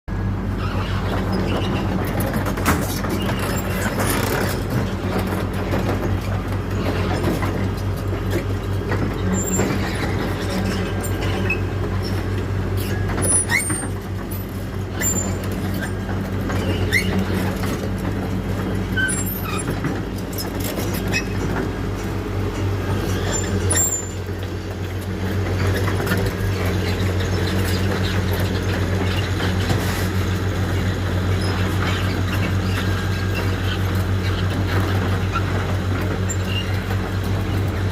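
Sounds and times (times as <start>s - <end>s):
heavy diesel engine running: 0.1s - 37.9s
short high squeaks and clicks: 9.1s - 17.9s, 18.8s - 21.6s, 22.5s - 24.4s, 36.2s - 37.0s.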